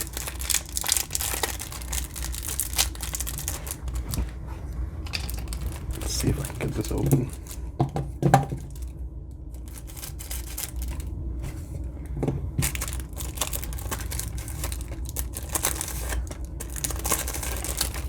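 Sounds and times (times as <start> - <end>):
packaging tearing and crinkling: 0.0 - 4.3, 5.1 - 7.6, 8.6 - 8.9, 9.5 - 11.1, 12.6 - 18.0.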